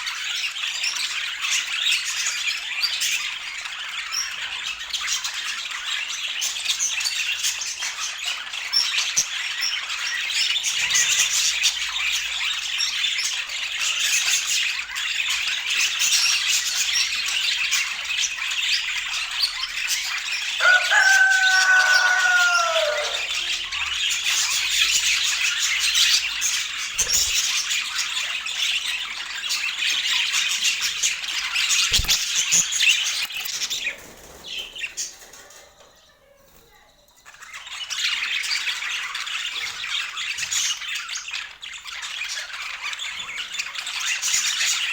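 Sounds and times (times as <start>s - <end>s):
small birds chirping: 0.0s - 44.9s
low falling bird call: 20.6s - 23.5s.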